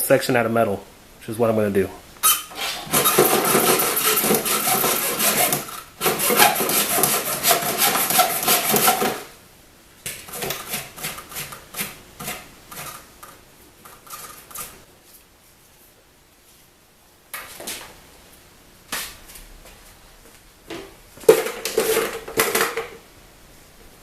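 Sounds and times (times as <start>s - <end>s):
file rasping plastic: 2.2s - 9.3s.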